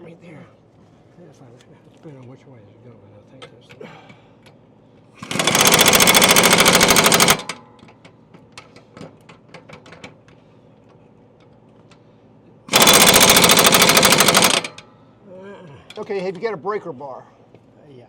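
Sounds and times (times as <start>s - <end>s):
pneumatic impact wrench hammering: 5.2s - 8.0s, 12.7s - 14.9s.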